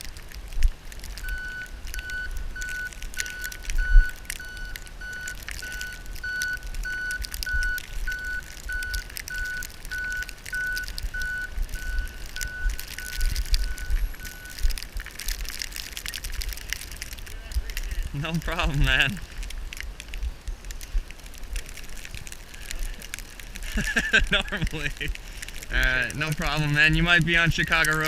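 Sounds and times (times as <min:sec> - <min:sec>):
wind and engine rumble: 0:00.0 - 0:28.0
truck reversing alarm beeping: 0:01.2 - 0:14.7.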